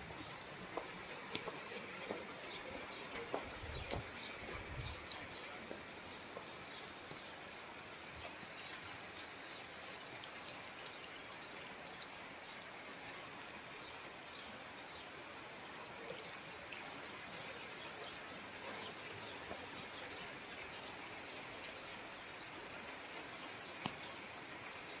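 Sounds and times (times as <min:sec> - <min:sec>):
steady rain hiss: 0:00.0 - 0:25.0
drips and taps: 0:00.2 - 0:09.6, 0:23.1 - 0:24.1.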